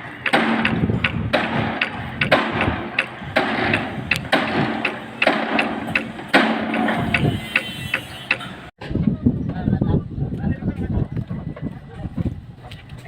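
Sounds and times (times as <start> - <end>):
knocks: 0.0 - 8.7.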